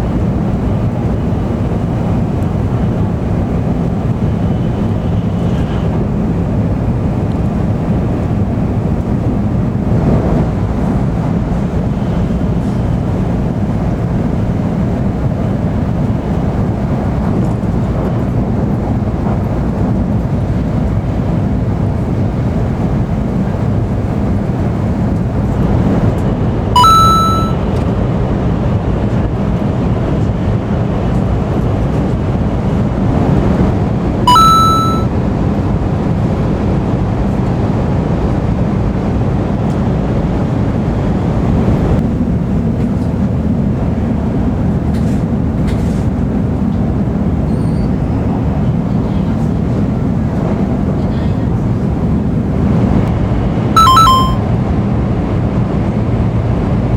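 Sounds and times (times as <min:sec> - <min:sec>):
train running noise at speed: 0:00.0 - 0:56.9
short electronic beeps: 0:26.8 - 0:27.6, 0:34.3 - 0:35.1, 0:53.8 - 0:54.4.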